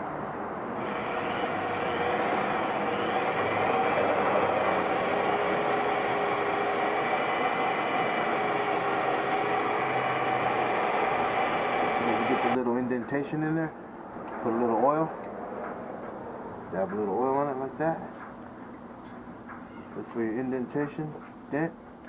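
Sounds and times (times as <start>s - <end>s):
drill grinding into glass: 0.8s - 12.6s.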